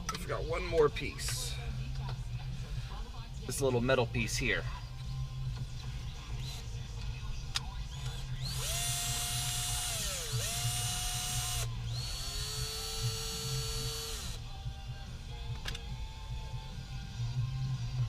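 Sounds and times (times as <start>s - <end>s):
electric power drill whining: 8.0s - 14.4s.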